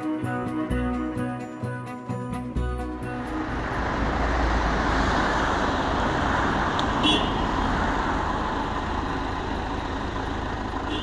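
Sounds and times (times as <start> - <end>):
car road noise: 2.6 - 11.0.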